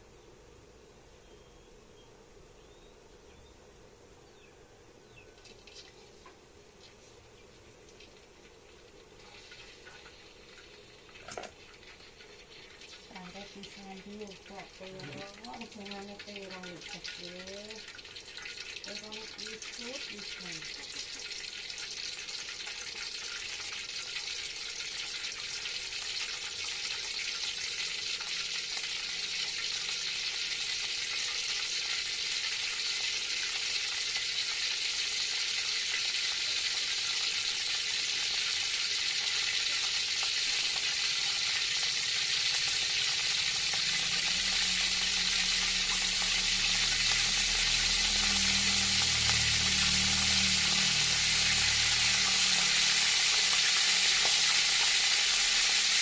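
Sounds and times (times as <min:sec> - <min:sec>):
oil sizzling in a frying pan: 0:04.6 - 0:56.0.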